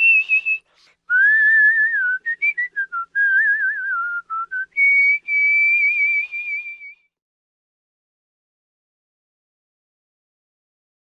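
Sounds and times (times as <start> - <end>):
person whistling a tune: 0.0 - 7.2.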